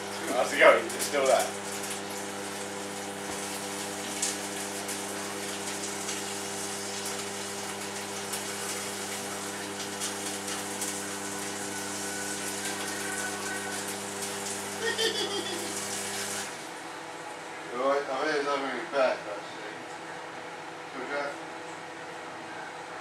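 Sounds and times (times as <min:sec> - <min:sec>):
microwave oven hum and fan: 0:00.0 - 0:23.0.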